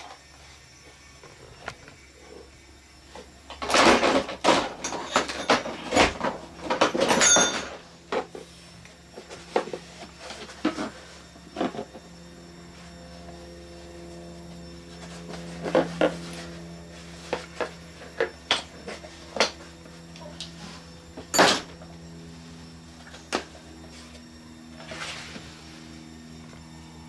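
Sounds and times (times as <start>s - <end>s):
tools clattering in a box: 3.5s - 8.3s, 21.2s - 21.8s.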